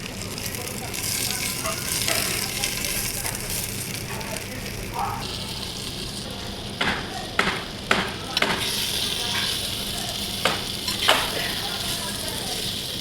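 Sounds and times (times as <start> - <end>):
noodles sizzling in a pot: 0.0 - 13.0
utensil scraping a pot: 1.0 - 3.9.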